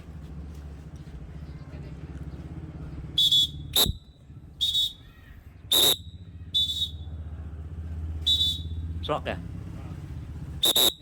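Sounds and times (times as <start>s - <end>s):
shrill whistle blasts: 3.2s - 7.1s, 8.2s - 8.9s, 10.6s - 11.0s.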